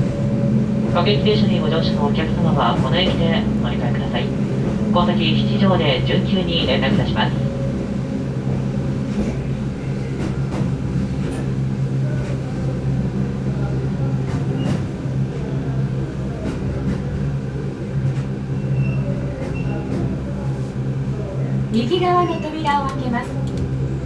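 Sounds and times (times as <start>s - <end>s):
electric train low hum: 0.0s - 24.0s
wheels clicking on track: 21.7s - 24.0s.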